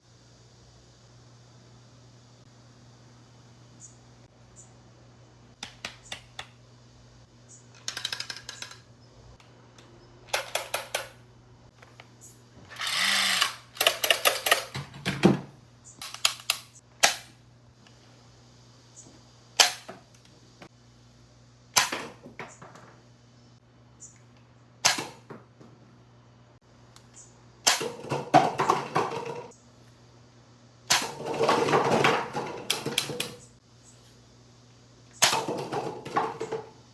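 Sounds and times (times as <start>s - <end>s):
toy blaster snaps: 16.0s - 17.4s, 19.6s - 19.9s, 21.8s - 22.1s.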